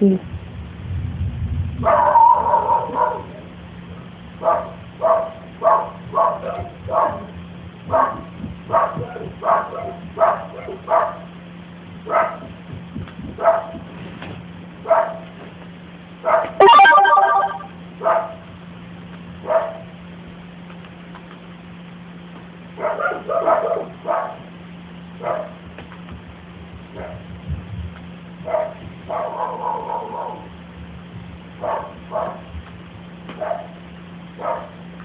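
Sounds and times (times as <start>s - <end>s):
small dog barking: 1.8s - 3.3s, 4.4s - 7.3s, 7.9s - 11.3s, 12.1s - 12.5s, 13.4s - 13.8s, 14.8s - 15.3s, 16.2s - 16.7s, 18.0s - 18.4s, 19.4s - 19.9s, 22.8s - 24.5s, 25.2s - 25.6s, 26.9s - 27.3s, 28.4s - 30.5s, 31.6s - 32.5s, 33.4s - 33.8s, 34.4s - 34.8s
long pitched sound: 16.6s - 17.8s.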